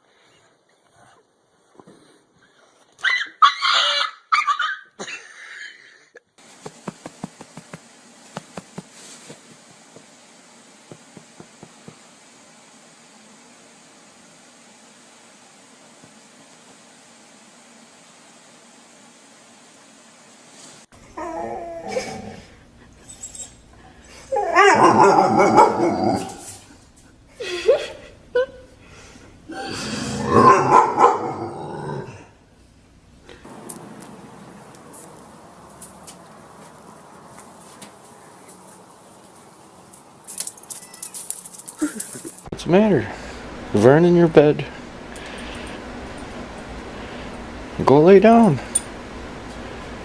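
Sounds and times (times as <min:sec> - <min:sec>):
dog whining: 0:03.0 - 0:04.9, 0:21.0 - 0:26.6.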